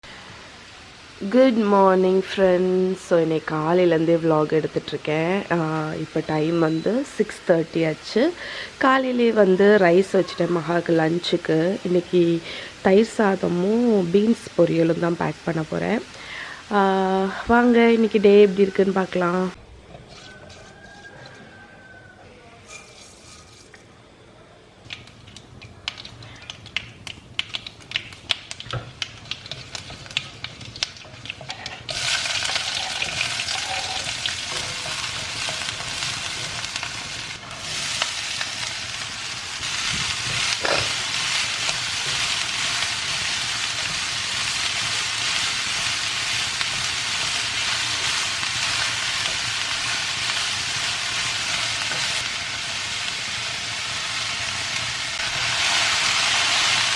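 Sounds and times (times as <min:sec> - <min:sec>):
food sizzling in hot oil: 0:24.8 - 0:56.9.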